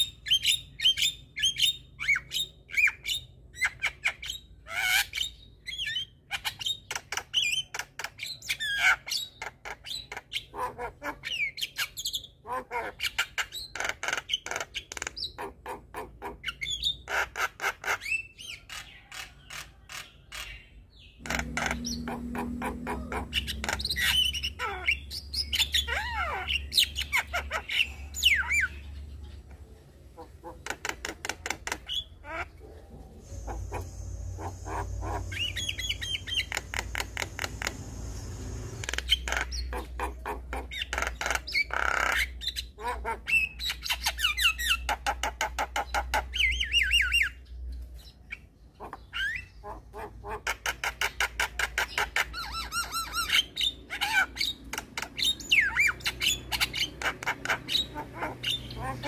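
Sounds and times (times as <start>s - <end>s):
low hum: 32.7s - 39.1s.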